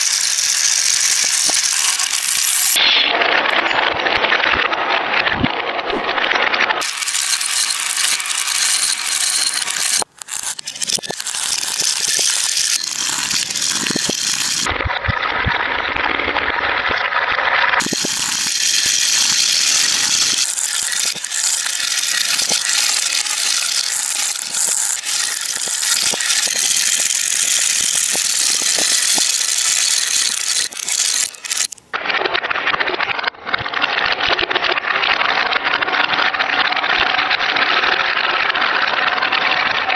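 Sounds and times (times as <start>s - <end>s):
marbles rattling down track: 0.0s - 4.0s, 6.8s - 14.7s, 17.8s - 32.0s.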